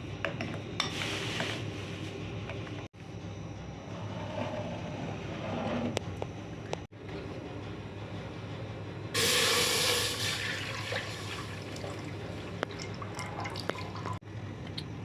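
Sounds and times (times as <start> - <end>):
liquid pouring into container: 9.2 - 14.2.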